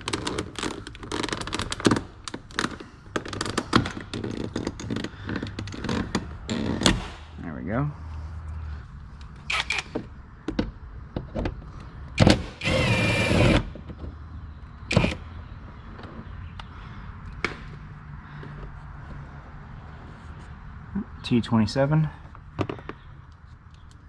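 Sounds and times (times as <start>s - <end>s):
cordless drill running: 12.4s - 13.7s.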